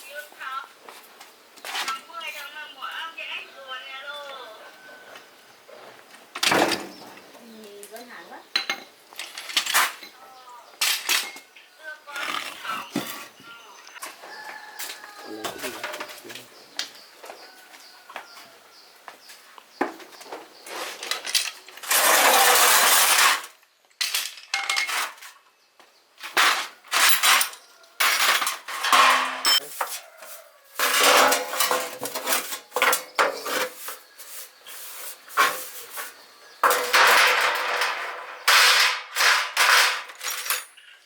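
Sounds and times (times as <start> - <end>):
metal tools clinking and scraping: 8.5 - 11.6, 14.8 - 16.4, 20.7 - 25.4, 26.2 - 41.0.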